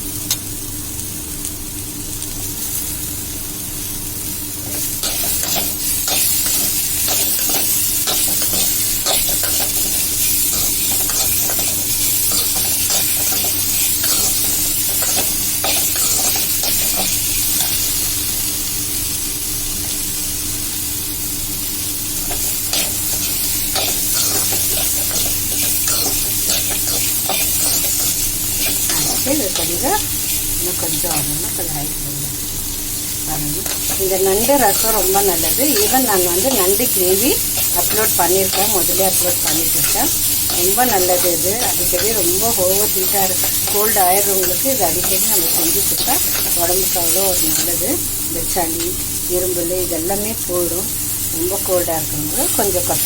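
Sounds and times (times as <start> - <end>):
vegetables sizzling in oil: 0.0 - 53.0
spatula stirring and scraping pan: 4.7 - 18.0, 22.2 - 31.4, 33.6 - 48.1.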